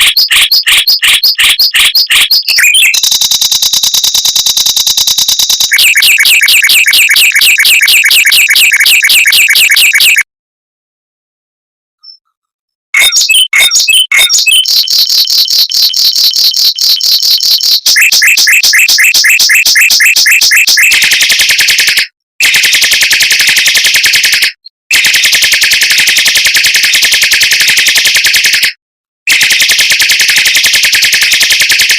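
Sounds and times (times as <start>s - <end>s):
mockingbird singing: 0.0s - 3.0s, 13.0s - 21.0s.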